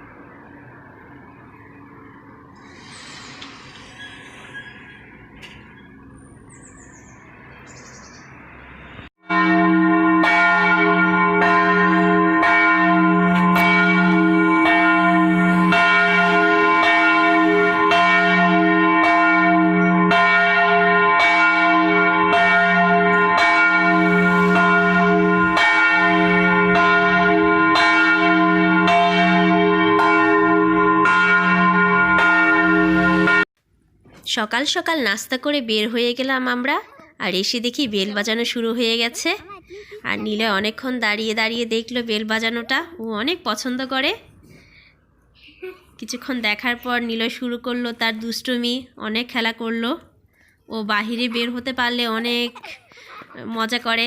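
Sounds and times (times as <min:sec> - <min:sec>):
church bells ringing: 0:09.2 - 0:33.5, 0:50.9 - 0:52.5.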